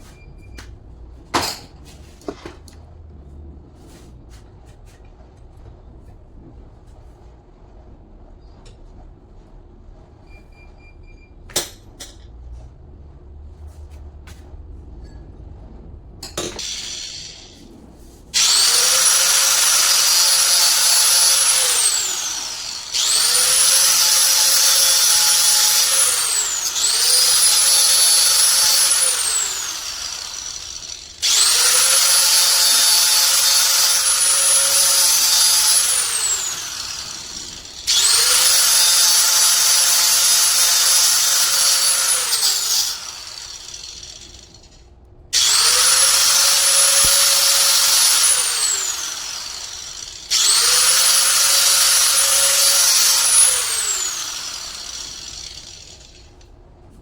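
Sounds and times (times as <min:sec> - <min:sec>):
power tool motor running: 0:16.6 - 0:17.6, 0:18.4 - 0:44.7, 0:45.4 - 0:56.3.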